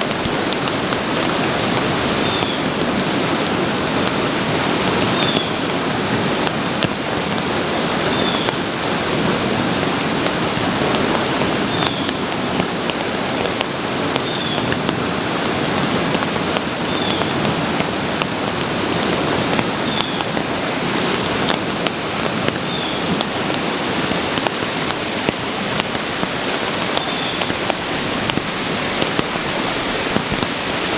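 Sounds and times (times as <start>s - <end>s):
heavy rain: 0.0s - 30.9s
rushing water of a brook: 0.0s - 30.9s.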